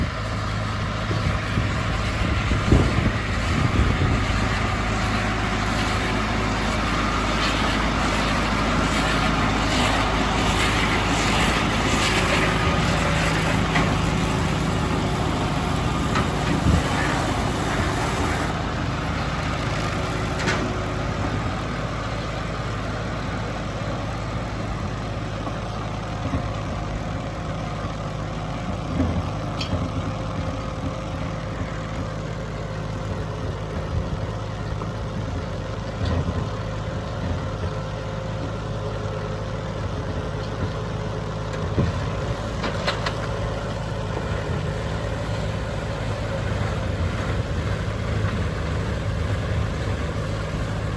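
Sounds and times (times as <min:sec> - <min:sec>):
tractor running: 0:00.0 - 0:50.9
machinery knocks and clatters: 0:41.5 - 0:50.9.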